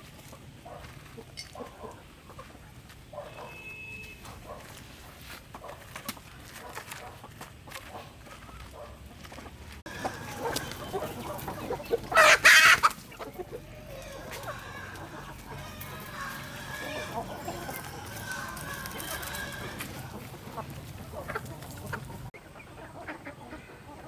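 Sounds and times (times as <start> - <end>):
chickens clucking: 0.0 - 3.5, 4.1 - 24.0
rooster crowing: 9.9 - 11.4, 13.5 - 20.2.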